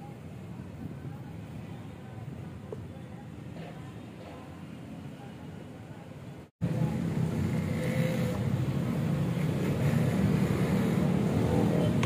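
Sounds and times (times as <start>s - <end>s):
motorcycle engine running: 6.6s - 12.0s.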